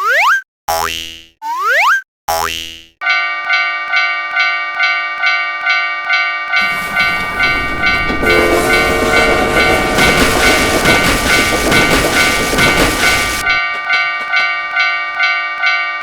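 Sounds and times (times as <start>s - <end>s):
level crossing bell ringing: 3.0s - 16.0s
train rumbling past: 6.5s - 15.1s.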